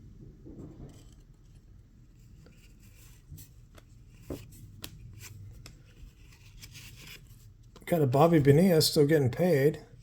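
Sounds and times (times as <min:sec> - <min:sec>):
low room hum: 0:00.0 - 0:10.0
trading cards flipped by hand: 0:02.6 - 0:07.9.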